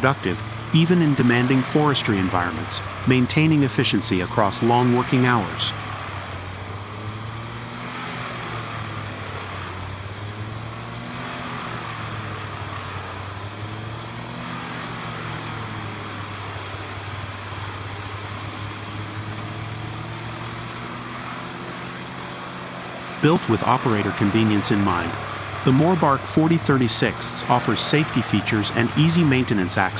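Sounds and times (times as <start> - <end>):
wood chipper diesel drone: 0.0 - 29.9.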